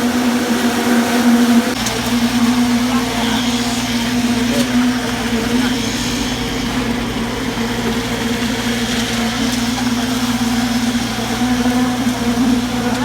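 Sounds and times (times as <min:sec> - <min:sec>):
constant hum: 0:00.0 - 0:13.0
machinery engine drone: 0:00.0 - 0:13.0.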